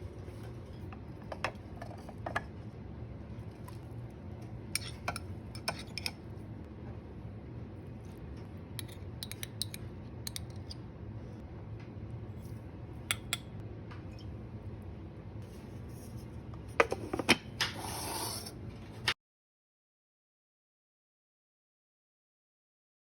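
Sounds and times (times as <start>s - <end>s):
steady low hum: 0.0s - 17.3s.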